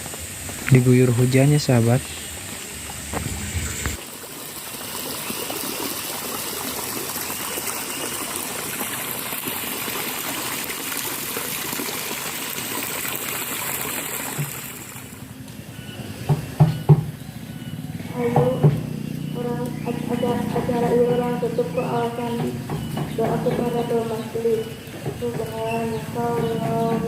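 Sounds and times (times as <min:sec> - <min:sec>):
stream flowing: 0:00.0 - 0:15.3.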